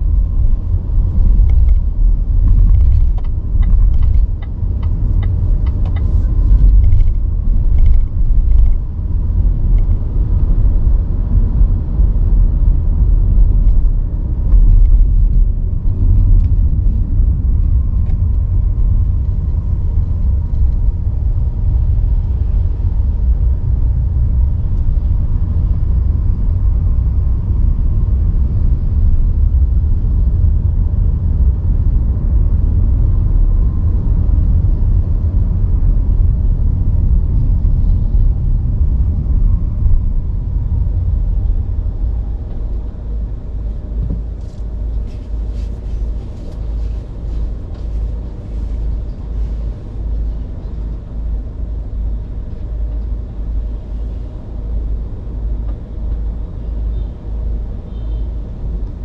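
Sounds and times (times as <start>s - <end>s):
car tyres rumbling: 0.0s - 59.0s
light clicks or rattles: 1.2s - 8.8s.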